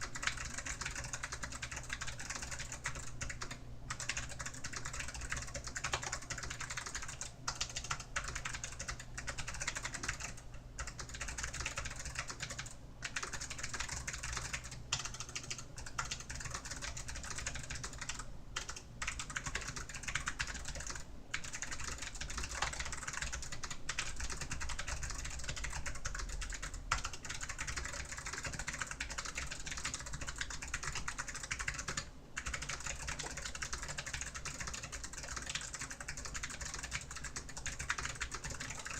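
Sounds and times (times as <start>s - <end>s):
fast typing on mechanical keyboard: 0.0s - 38.9s.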